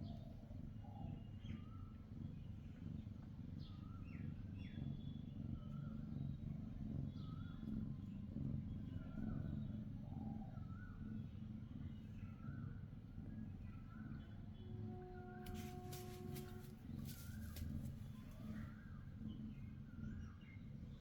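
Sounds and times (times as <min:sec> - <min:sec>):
low rumble of distant traffic: 0:10.9 - 0:21.0.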